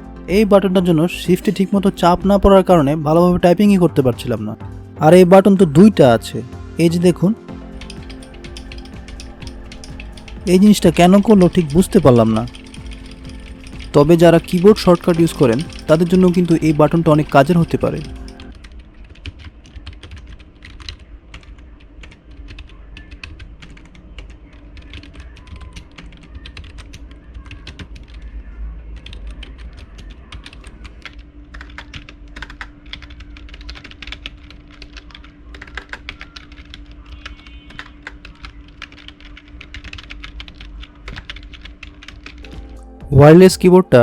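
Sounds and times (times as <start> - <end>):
keyboard typing clicks: 7.5 - 28.4, 29.0 - 42.8.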